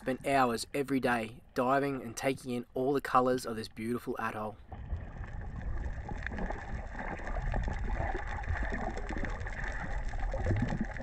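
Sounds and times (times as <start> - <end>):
water rumbling and gurgling: 4.2 - 11.0.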